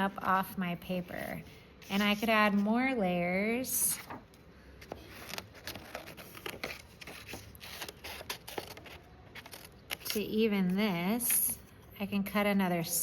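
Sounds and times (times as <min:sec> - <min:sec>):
paper and cardboard rustling: 0:04.0 - 0:10.3.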